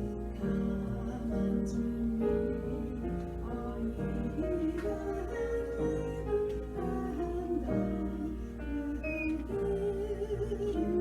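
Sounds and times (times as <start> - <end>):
slow melody with vibrato: 0.0 - 11.0
steady low hum: 0.0 - 11.0.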